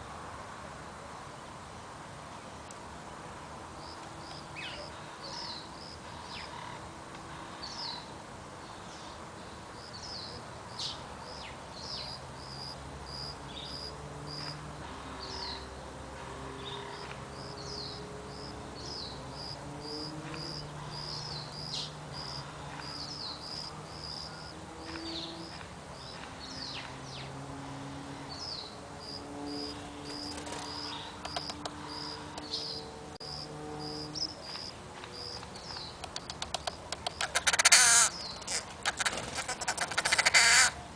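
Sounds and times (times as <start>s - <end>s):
birds chirping: 3.8s - 15.8s, 16.4s - 40.9s
sharp clicks: 30.2s - 32.5s, 35.3s - 37.4s.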